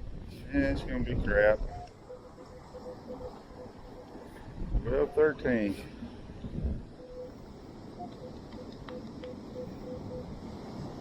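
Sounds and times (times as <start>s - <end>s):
metal detector beeps: 1.7s - 4.2s, 7.0s - 7.4s, 8.0s - 10.4s.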